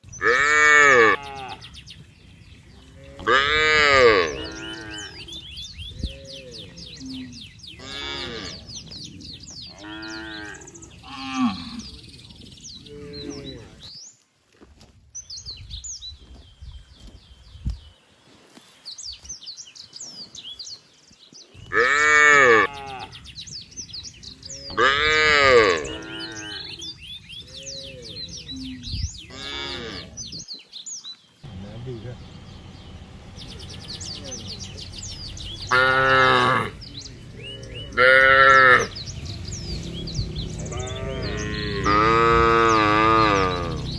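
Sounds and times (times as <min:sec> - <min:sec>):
cows mooing: 0:00.2 - 0:01.8, 0:02.8 - 0:05.5, 0:06.1 - 0:08.8, 0:09.7 - 0:12.0, 0:21.7 - 0:23.2, 0:24.4 - 0:26.9, 0:27.5 - 0:30.2, 0:31.5 - 0:43.9.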